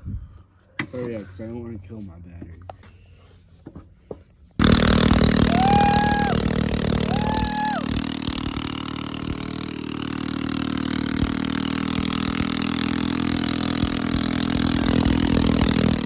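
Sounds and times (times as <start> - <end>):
small engine idling: 4.6 - 16.0.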